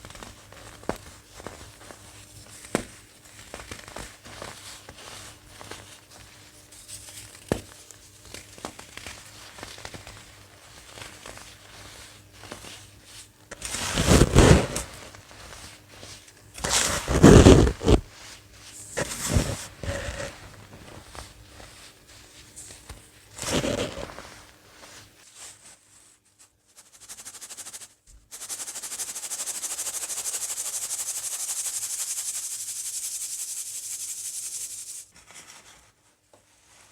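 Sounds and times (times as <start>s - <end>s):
baking soda crackling: 0.2s - 25.2s, 30.9s - 35.1s
loud crunches: 13.7s - 14.9s, 16.6s - 18.0s, 23.4s - 24.2s.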